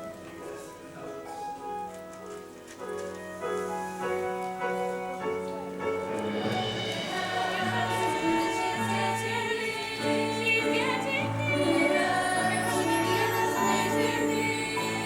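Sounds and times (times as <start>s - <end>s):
sustained accompaniment chords: 6.2s - 15.0s
group of voices singing: 6.4s - 15.0s.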